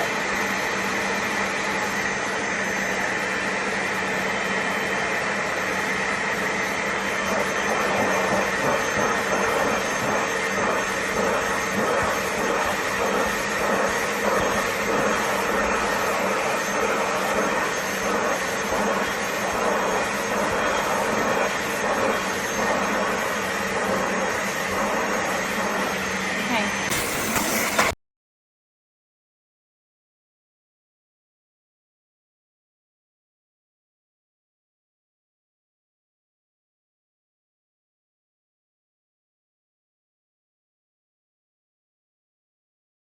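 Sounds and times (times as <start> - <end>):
carpet cleaner motor whining: 0.0 - 27.9.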